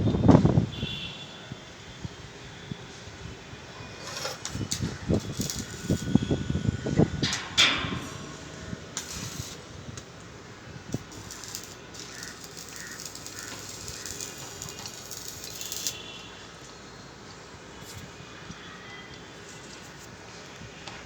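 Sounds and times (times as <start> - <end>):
electric arc welding hiss: 4.2 - 7.1, 8.0 - 10.2, 10.8 - 16.4.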